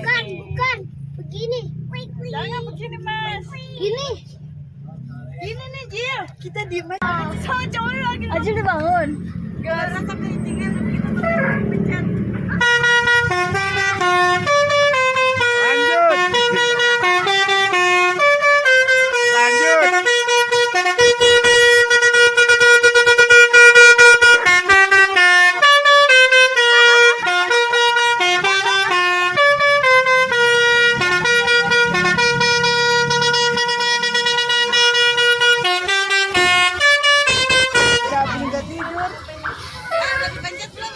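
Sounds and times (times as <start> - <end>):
bus air horn playing tune: 11.0 - 11.8, 12.5 - 38.9.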